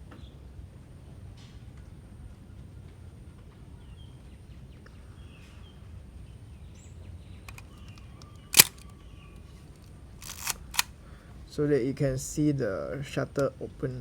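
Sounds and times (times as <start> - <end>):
camera shutter click: 8.6 - 8.8, 10.2 - 10.9.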